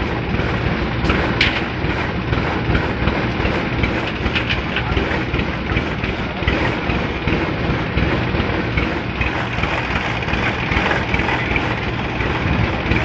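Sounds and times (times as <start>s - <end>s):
continuous metallic rattle: 0.0s - 13.0s
farm machinery engine running: 0.0s - 13.0s
metallic clanks: 1.0s - 1.9s, 2.7s - 6.6s.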